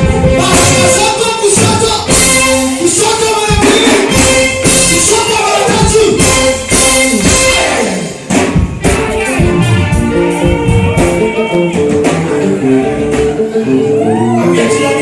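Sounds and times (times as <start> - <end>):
drums: 0.0 - 13.9
guitar: 0.0 - 15.0
people singing: 10.3 - 15.0.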